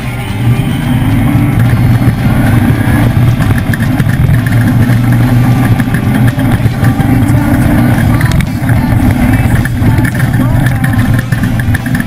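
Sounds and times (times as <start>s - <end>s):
truck engine deep rumble: 0.0s - 12.0s.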